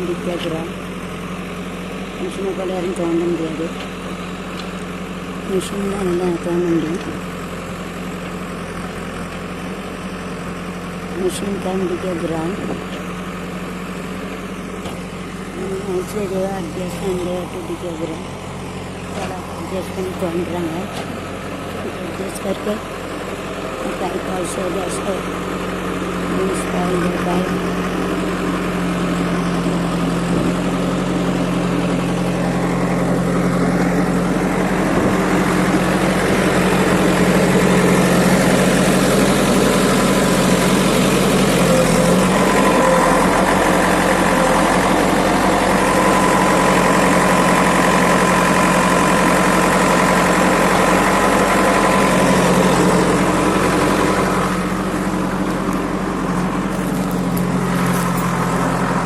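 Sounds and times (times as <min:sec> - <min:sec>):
construction machine engine running: 0:00.0 - 0:59.0.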